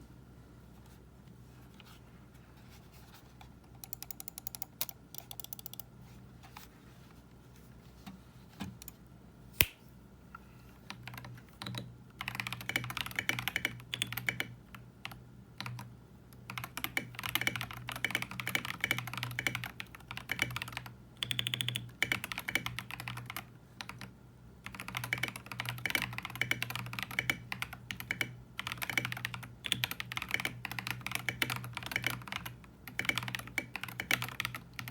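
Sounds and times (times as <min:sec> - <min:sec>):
mechanical keyboard typing: 0:03.8 - 0:05.9, 0:10.9 - 0:34.9.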